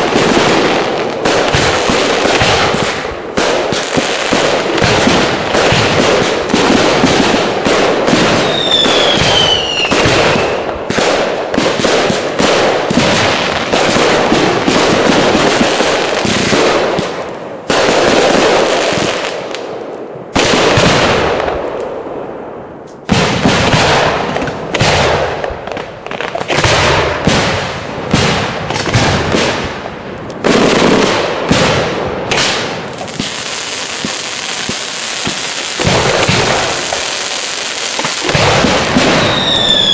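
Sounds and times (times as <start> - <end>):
fireworks bursts and bangs: 0.0 - 22.0, 22.9 - 39.9
falling firework whistle: 8.4 - 10.6, 39.0 - 39.9.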